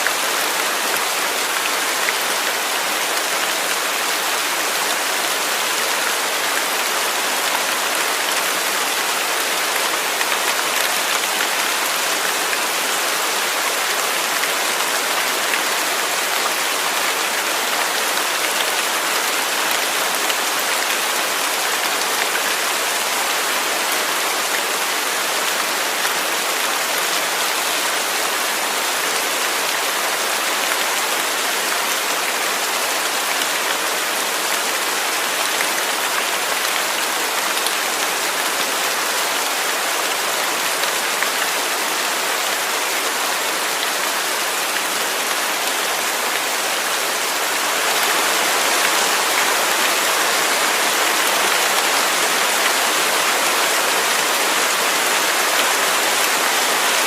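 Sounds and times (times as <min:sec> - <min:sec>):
waterfall rushing: 0:00.0 - 0:57.0.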